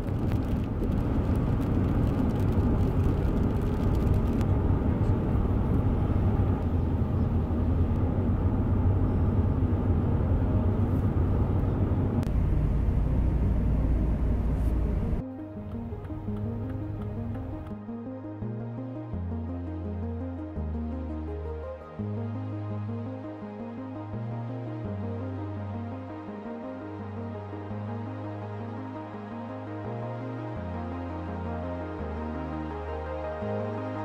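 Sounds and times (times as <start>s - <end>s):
car rumbling on the move: 0.0s - 17.8s.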